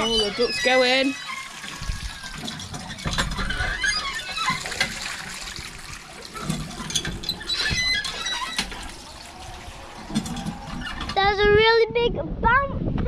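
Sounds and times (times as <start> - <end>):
high-pitched squeals: 0.0 - 2.4, 6.3 - 11.5
water splashing and gushing: 0.0 - 11.6.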